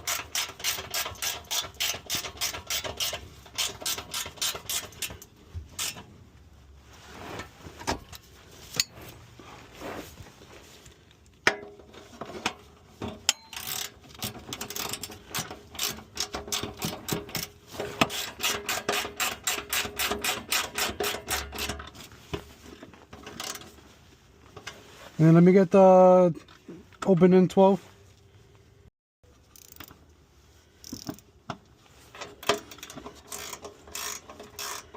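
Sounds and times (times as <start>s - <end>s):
ratchet wrench clicking: 0.0s - 6.0s, 13.3s - 17.5s, 18.1s - 21.7s, 29.5s - 29.9s, 30.8s - 31.2s, 32.4s - 34.9s.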